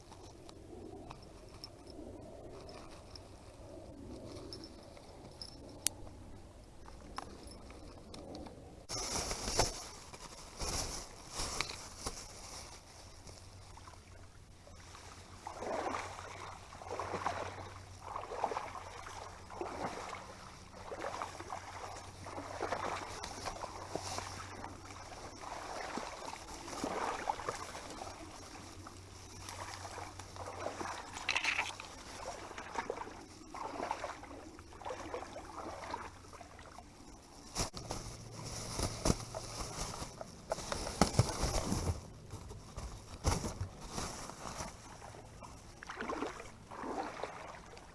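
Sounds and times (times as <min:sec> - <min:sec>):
water sloshing: 0:15.0 - 0:47.9.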